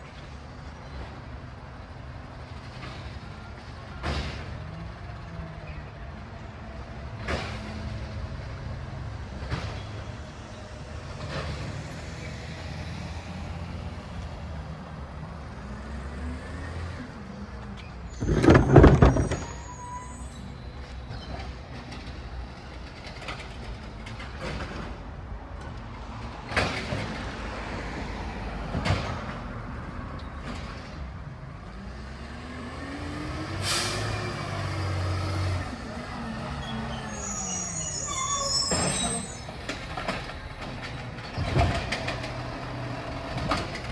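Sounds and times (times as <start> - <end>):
clunks and knocks: 18.1 - 19.8
diesel truck engine running: 18.2 - 19.8.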